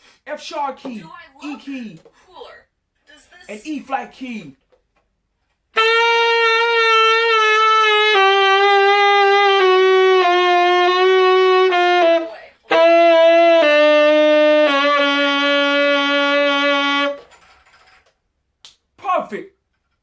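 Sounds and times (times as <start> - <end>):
tenor saxophone held notes: 5.8 - 17.3.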